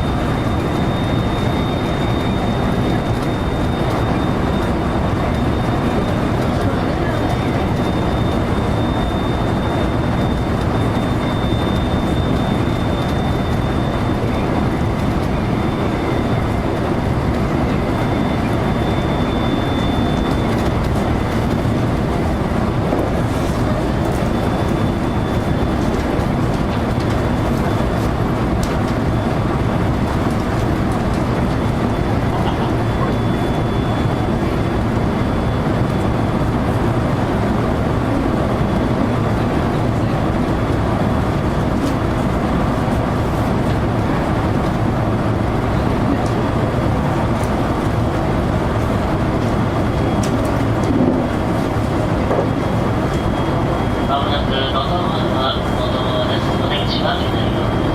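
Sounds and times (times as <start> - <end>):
faint high whine: 0.0 - 28.1, 28.8 - 36.6, 49.4 - 57.9.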